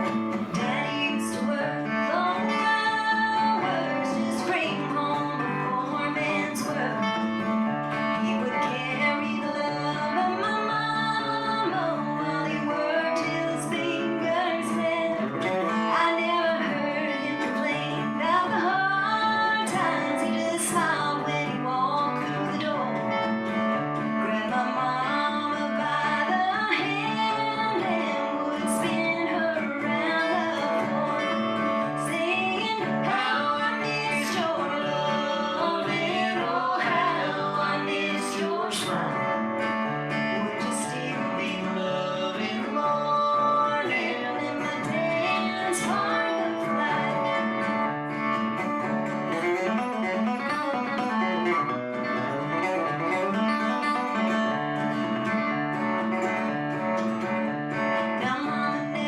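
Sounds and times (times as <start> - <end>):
acoustic guitar: 0.0 - 59.0
woman singing country song: 0.0 - 59.0.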